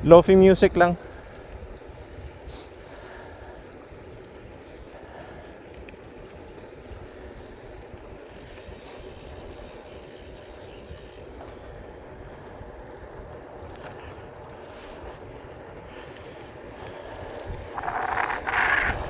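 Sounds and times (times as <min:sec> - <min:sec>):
wind on microphone: 0:17.3 - 0:19.0
tyres rumbling over gravel: 0:17.6 - 0:19.0
high hiss: 0:17.7 - 0:19.0.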